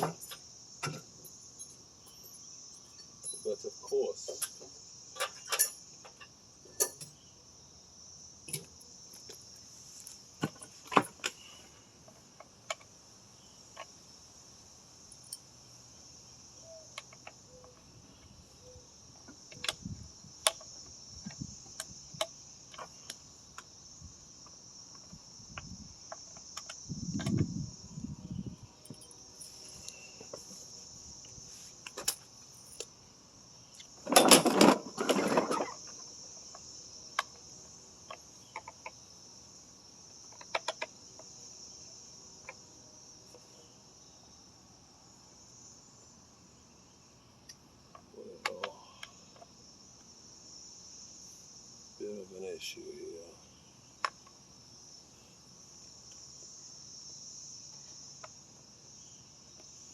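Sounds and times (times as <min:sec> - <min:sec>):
crickets chirping: 0:00.0 - 0:59.9
small metal parts clinking: 0:01.2 - 0:03.6, 0:05.2 - 0:05.9.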